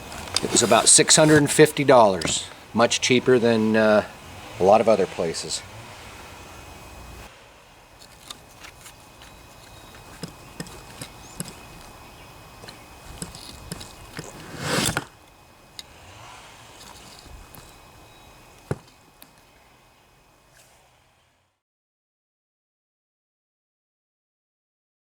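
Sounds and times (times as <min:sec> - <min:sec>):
rustling scrape: 0:00.0 - 0:02.6, 0:08.0 - 0:19.8
handling clicks and knocks: 0:00.0 - 0:02.7, 0:08.0 - 0:15.9, 0:16.7 - 0:19.6.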